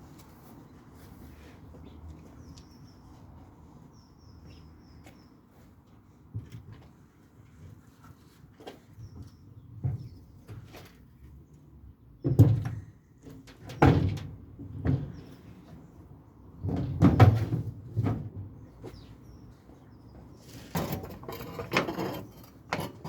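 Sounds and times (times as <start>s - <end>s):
metal tool box thumps and knocks: 12.3s - 12.8s, 13.6s - 15.2s, 16.6s - 18.5s.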